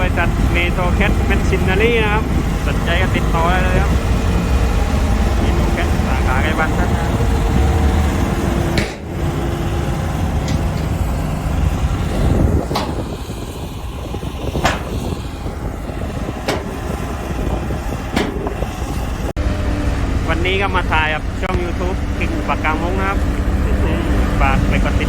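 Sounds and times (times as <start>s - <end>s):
bulldozer diesel engine rumbling: 0.0s - 25.0s
sharp metallic clanks: 8.7s - 9.6s, 10.2s - 11.3s, 12.6s - 13.2s, 14.6s - 15.2s, 16.4s - 16.9s, 18.1s - 18.6s.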